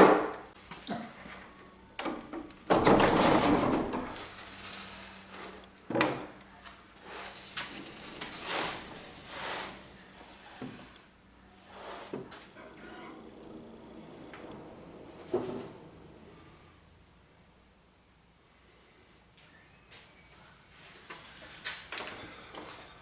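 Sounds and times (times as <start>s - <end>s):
barn door rolling rumble: 2.2s - 6.0s, 7.0s - 11.0s, 11.8s - 17.2s.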